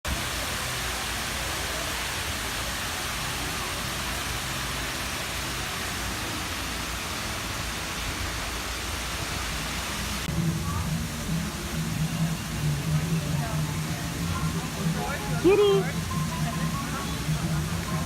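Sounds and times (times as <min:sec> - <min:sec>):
falling water rushing: 0:00.1 - 0:18.0.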